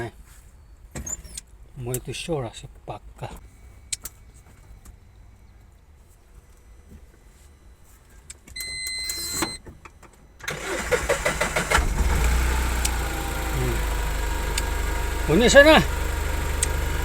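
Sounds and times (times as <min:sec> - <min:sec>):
engine starter cranking: 0:10.4 - 0:17.0
engine idling: 0:10.5 - 0:17.0.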